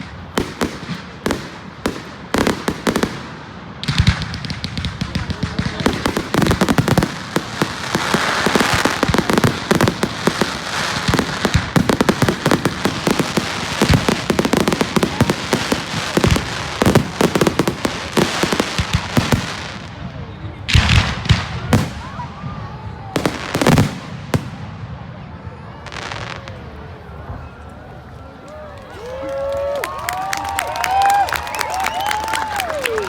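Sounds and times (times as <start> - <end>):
fireworks bangs and crackles: 0.0 - 29.2.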